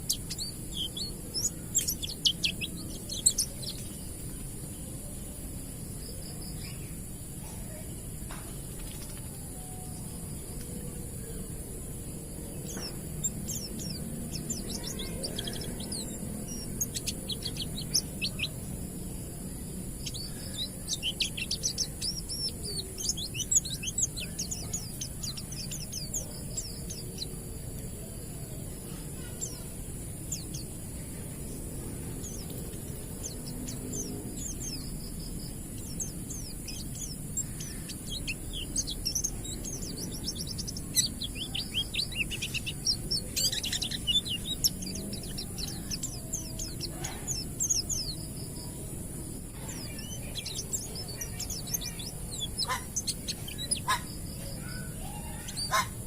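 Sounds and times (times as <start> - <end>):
steady high hiss: 0.0 - 55.7
birds twittering: 0.0 - 56.0.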